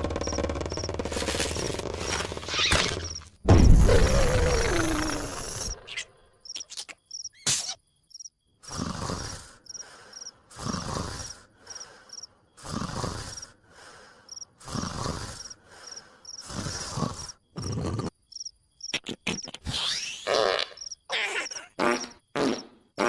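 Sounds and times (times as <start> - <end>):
cricket chirps: 0.0 - 23.0
cartoon snoring: 3.8 - 5.8, 8.6 - 12.0, 12.6 - 18.2.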